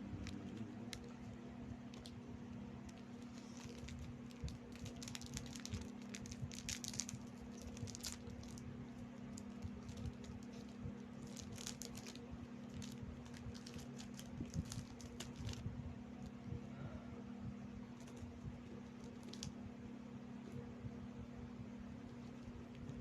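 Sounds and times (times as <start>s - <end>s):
crackers crunching: 0.0s - 15.6s, 18.0s - 19.6s
steady low hum: 0.0s - 23.0s.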